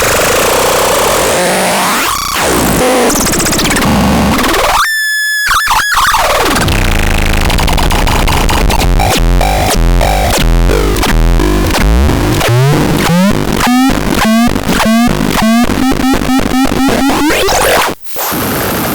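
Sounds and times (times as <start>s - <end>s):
harsh synthesizer tones: 1.2s - 4.8s, 6.0s - 18.9s
buzzing noise: 8.1s - 18.3s.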